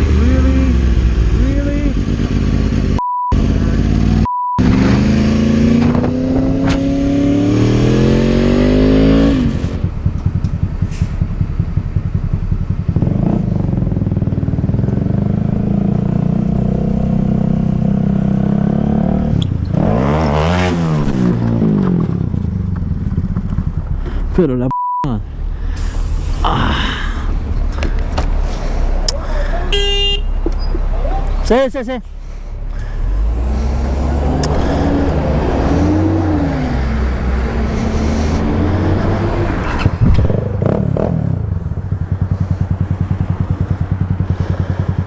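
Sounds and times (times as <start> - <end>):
motorcycle engine revving: 0.0 - 10.8, 11.4 - 23.9, 32.8 - 45.0
censor bleeps: 3.0 - 3.4, 4.2 - 4.7, 24.7 - 25.1
vehicle passing: 4.7 - 9.8, 32.2 - 45.0.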